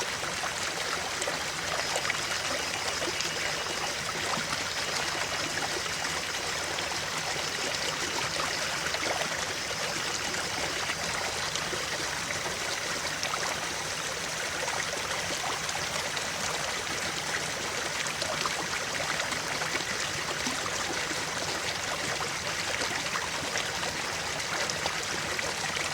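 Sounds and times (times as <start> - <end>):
flowing water: 0.0 - 25.9.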